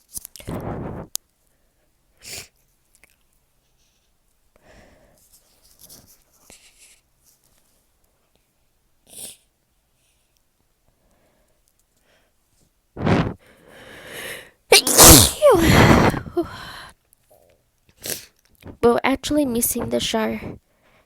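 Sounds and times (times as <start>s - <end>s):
loud breathy burst: 13.0s - 16.9s
person breathing and sniffing: 13.0s - 16.9s.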